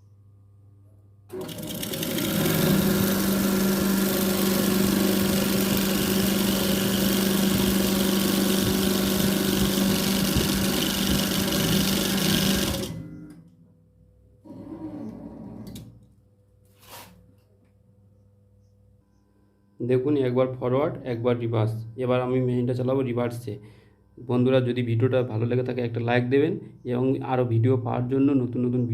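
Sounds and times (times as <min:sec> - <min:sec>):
coil-winding machine humming: 0:01.3 - 0:13.4.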